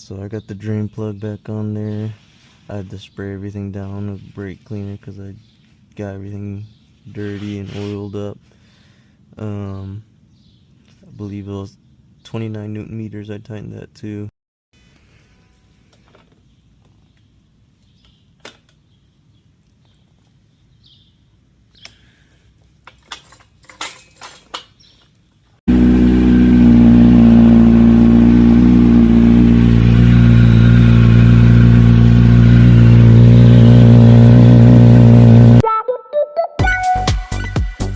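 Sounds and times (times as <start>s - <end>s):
motorcycle engine idling: 25.7s - 35.6s.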